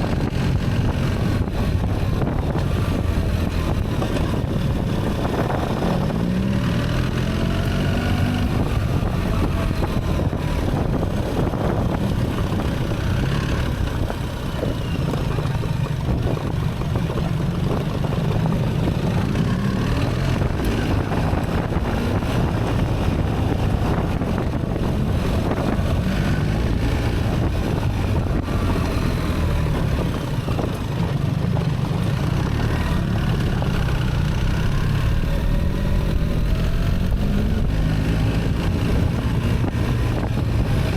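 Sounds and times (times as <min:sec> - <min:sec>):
wind noise: 0:00.0 - 0:40.9
motorcycle engine riding on gravel: 0:08.4 - 0:40.9.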